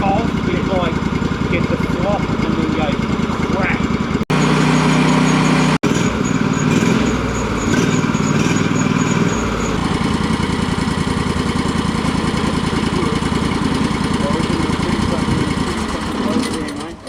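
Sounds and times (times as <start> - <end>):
sawmill engine running: 0.0 - 17.0.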